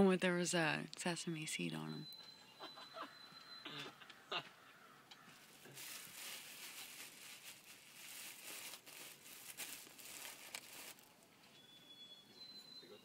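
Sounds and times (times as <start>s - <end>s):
faint crinkling and rustling: 5.2s - 11.6s.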